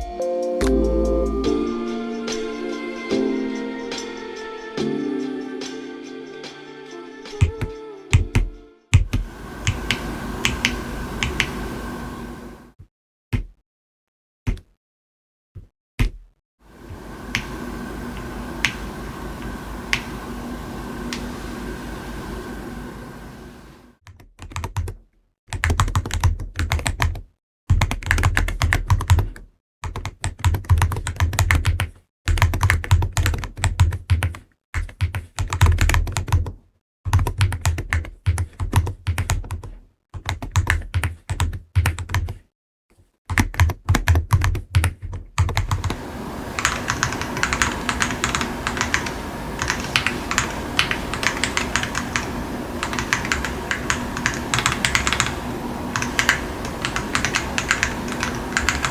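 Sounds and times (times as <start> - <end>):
keyboard typing: 9.0 - 12.6, 43.3 - 58.9
steady hum: 9.1 - 12.7, 16.7 - 24.0, 45.6 - 58.9.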